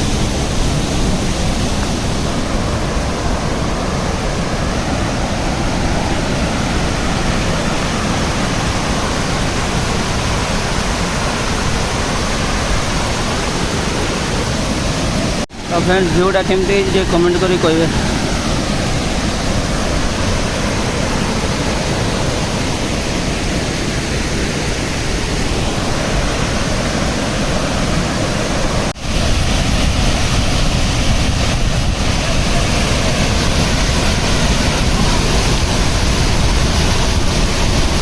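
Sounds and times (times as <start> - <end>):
waterfall rushing: 0.0 - 38.0.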